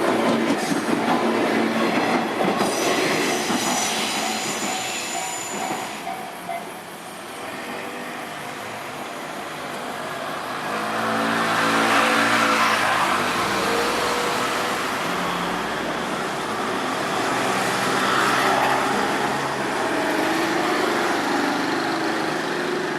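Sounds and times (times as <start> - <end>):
vehicle engines passing: 10.3 - 21.8.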